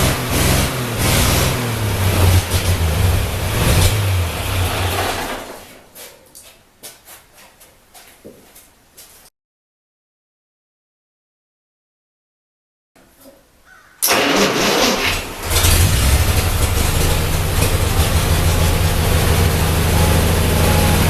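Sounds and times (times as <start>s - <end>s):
tractor engine running unevenly: 0.0s - 5.6s, 14.1s - 21.0s.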